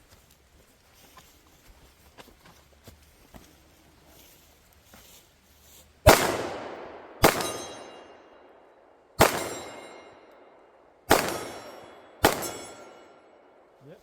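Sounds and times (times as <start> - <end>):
gunshots: 6.1 - 8.3, 9.2 - 10.2, 11.1 - 13.2
steel target ringing: 7.2 - 8.5, 9.2 - 13.5.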